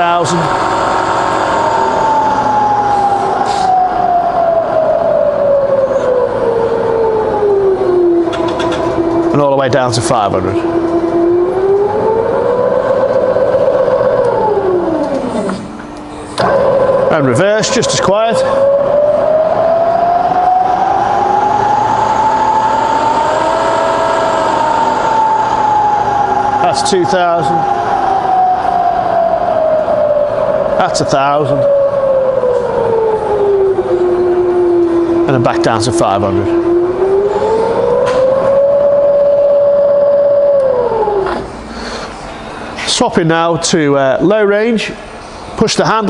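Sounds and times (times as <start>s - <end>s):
machine running hum: 0.0s - 45.9s
milling machine whine falling in pitch: 0.0s - 46.0s.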